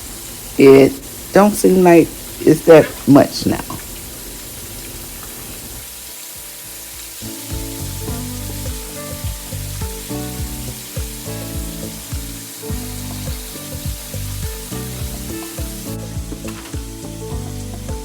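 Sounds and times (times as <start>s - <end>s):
chicken sizzling in oil: 0.0s - 18.0s
background music with a beat: 6.4s - 18.0s.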